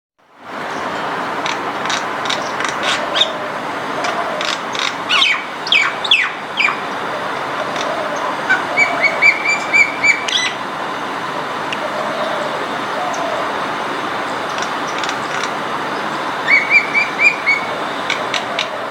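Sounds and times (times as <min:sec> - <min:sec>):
steady background noise: 0:00.2 - 0:18.9
bird clicks: 0:01.4 - 0:03.0, 0:14.5 - 0:15.6
bird whistled notes: 0:08.8 - 0:10.6, 0:16.4 - 0:17.7.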